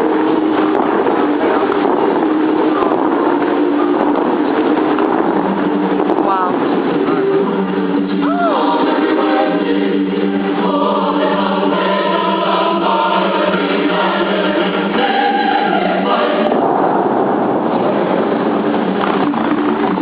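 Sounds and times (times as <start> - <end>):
fountain water jets spraying: 0.0 - 9.6, 10.3 - 20.0
show music with choir singing: 6.8 - 17.4.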